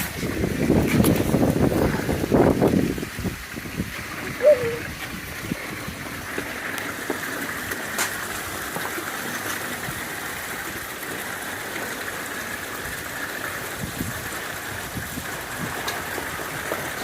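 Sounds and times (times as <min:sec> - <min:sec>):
running water rushing: 0:00.0 - 0:17.0.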